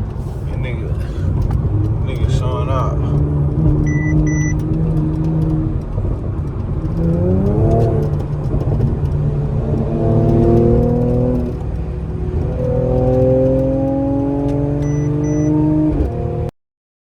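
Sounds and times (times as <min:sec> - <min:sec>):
car engine accelerating: 0:00.0 - 0:16.5
short electronic beeps: 0:03.8 - 0:04.6, 0:14.8 - 0:15.6.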